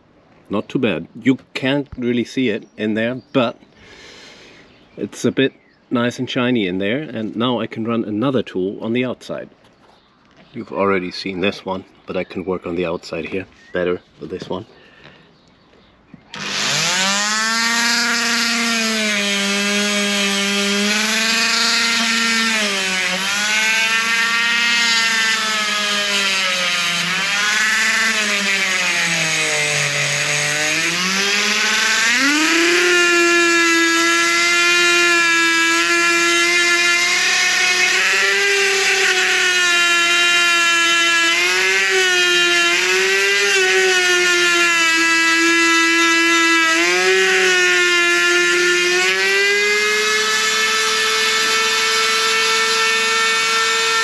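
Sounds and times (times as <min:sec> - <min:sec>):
rotary tool grinding metal: 0:16.3 - 0:54.0.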